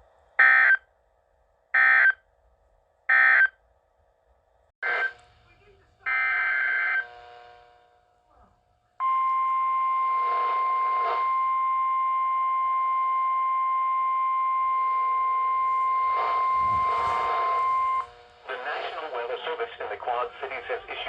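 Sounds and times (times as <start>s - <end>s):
steady warning alarm tone: 0.4s - 0.8s, 1.8s - 2.2s, 3.1s - 3.5s, 4.8s - 5.2s, 6.0s - 8.0s, 9.0s - 18.4s.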